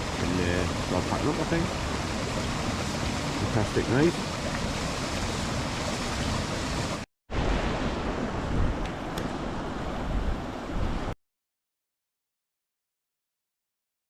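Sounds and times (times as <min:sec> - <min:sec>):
water rushing from waterfall: 0:00.0 - 0:10.1.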